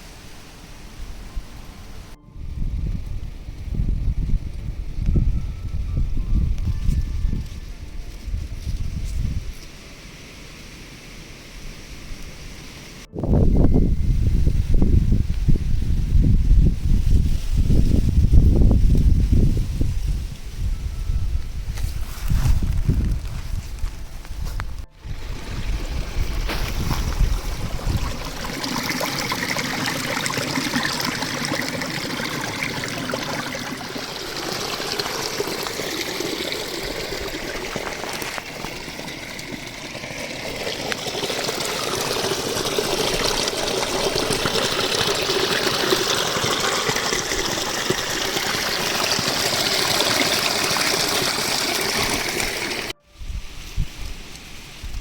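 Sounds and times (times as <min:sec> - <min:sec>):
stream water trickling: 0:25.0 - 0:53.0.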